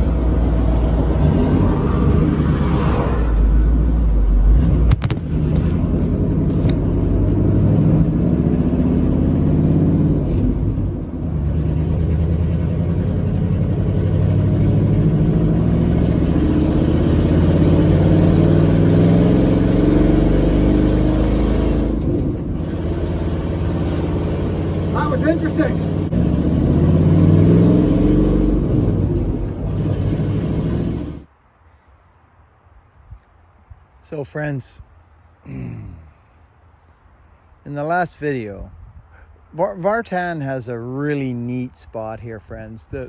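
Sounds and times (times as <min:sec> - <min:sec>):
loud exhaust: 0:00.0 - 0:31.3
pickup truck engine accelerating: 0:00.0 - 0:31.3.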